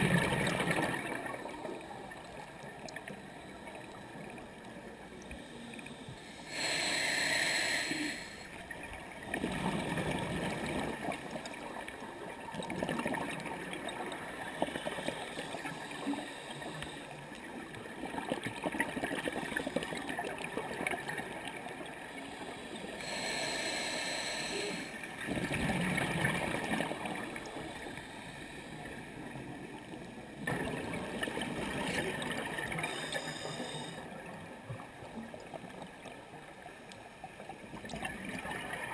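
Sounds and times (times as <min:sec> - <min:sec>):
gurgling exhaled bubbles: 0:00.0 - 0:01.8, 0:09.2 - 0:15.3, 0:25.2 - 0:27.6, 0:30.4 - 0:33.7
hissing regulator inhalation: 0:05.4 - 0:08.5, 0:22.6 - 0:25.0, 0:32.8 - 0:34.0.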